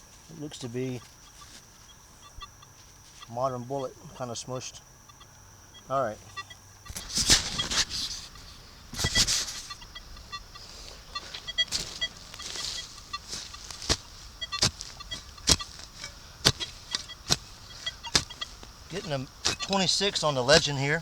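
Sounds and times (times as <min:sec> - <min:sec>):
metal detector beeps: 0:00.0 - 0:21.0
sharp knocks and clicks: 0:06.3 - 0:20.8
digging in leaf litter and dirt: 0:06.8 - 0:21.0.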